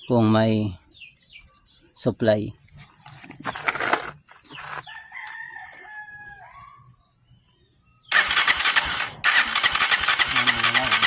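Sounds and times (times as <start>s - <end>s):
rooster crowing: 4.7s - 7.1s
motorcycle engine cranking: 8.1s - 11.0s.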